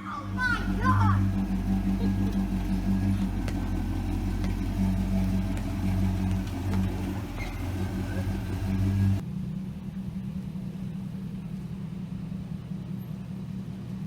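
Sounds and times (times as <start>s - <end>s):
car engine humming: 0.0s - 9.2s.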